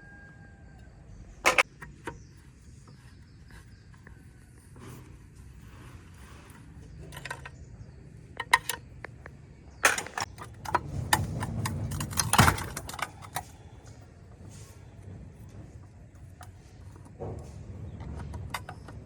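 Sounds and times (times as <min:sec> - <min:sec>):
metal tools clinking: 0:09.8 - 0:14.7.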